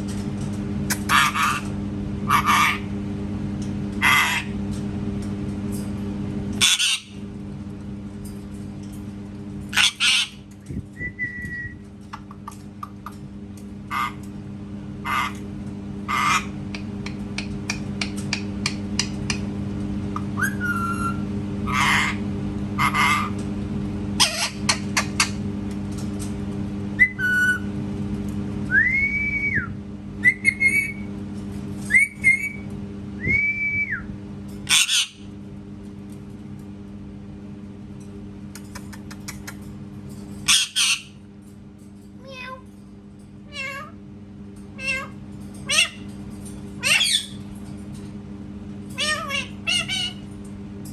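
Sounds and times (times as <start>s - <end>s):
steady low hum: 0.0s - 50.9s
parrot chirps: 0.9s - 1.7s, 6.6s - 7.2s, 9.8s - 10.4s, 16.1s - 16.6s, 34.7s - 35.3s, 40.4s - 41.2s, 44.8s - 46.1s, 46.8s - 47.4s, 49.0s - 50.3s
parrot harsh calls: 0.9s - 2.9s, 4.0s - 4.6s, 6.6s - 7.2s, 9.7s - 10.5s, 13.9s - 14.3s, 15.0s - 15.4s, 16.1s - 16.6s, 20.4s - 22.2s, 22.8s - 23.4s, 24.2s - 24.8s, 34.7s - 35.3s, 40.4s - 41.2s, 43.5s - 44.0s, 44.8s - 46.1s, 46.8s - 47.4s, 48.9s - 50.3s
parrot whistles: 28.8s - 31.1s, 31.9s - 32.6s.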